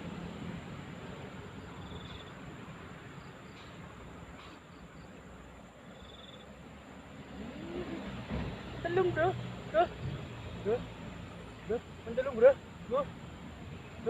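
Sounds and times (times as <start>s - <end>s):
insect trilling: 5.9s - 6.5s.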